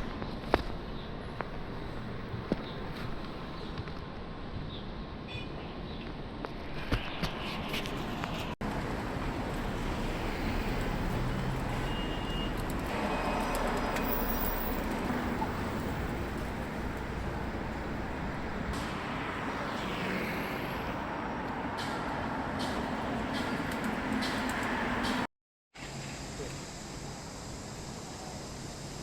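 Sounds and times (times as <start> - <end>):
city street traffic: 0.0 - 29.0
vehicles passing: 6.3 - 26.6.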